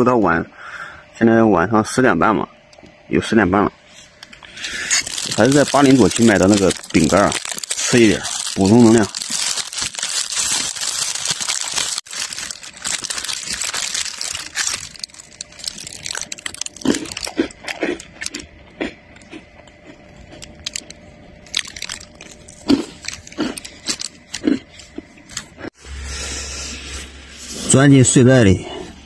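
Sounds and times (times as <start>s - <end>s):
plastic packet crinkling: 4.5s - 18.4s, 20.3s - 24.6s
biscuits being bitten and chewed: 4.5s - 25.7s.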